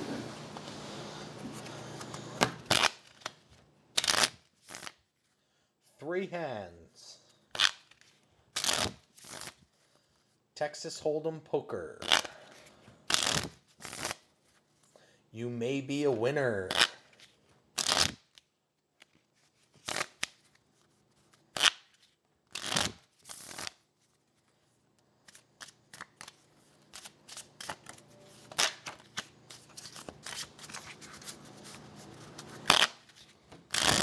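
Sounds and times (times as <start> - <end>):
playing cards shuffling: 1.4 - 5.0, 7.5 - 9.7, 12.0 - 14.6, 16.6 - 24.6, 25.2 - 34.0.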